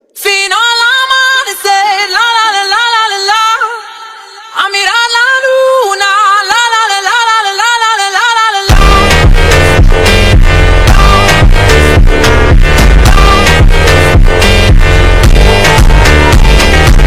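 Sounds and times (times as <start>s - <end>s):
person singing unaccompanied: 0.1s - 17.0s
electronic dance music: 6.2s - 17.0s.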